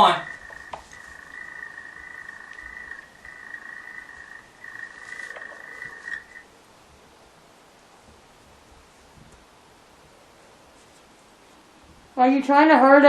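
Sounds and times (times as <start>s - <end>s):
frog trilling: 0.0s - 6.5s.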